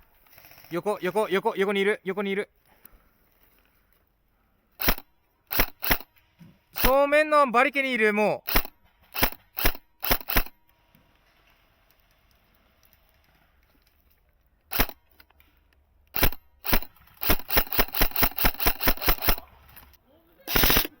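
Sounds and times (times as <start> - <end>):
airsoft guns firing: 4.8 - 6.1, 6.8 - 7.1, 8.5 - 10.6, 16.2 - 19.6, 20.5 - 21.0.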